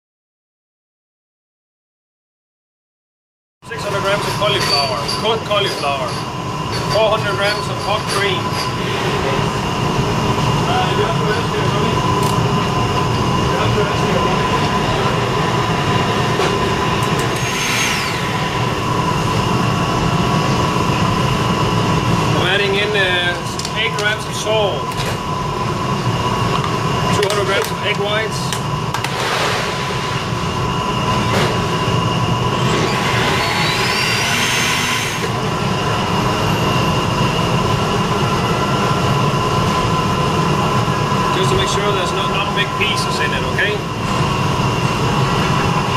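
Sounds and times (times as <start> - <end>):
blender motor running: 16.7 - 20.4, 32.2 - 36.5.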